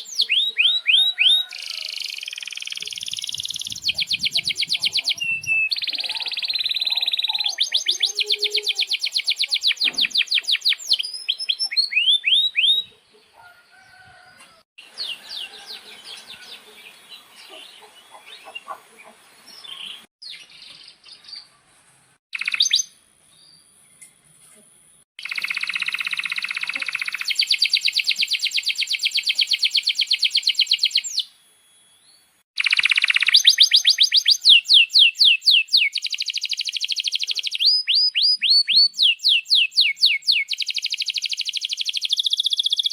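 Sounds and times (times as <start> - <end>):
canaries singing trills: 0.0 - 14.1, 14.8 - 21.5, 32.6 - 42.9.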